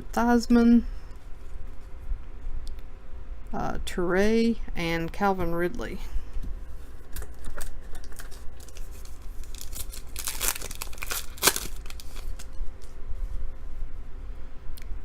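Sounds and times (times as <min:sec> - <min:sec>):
foil pack tearing and crinkling: 0:07.0 - 0:12.6.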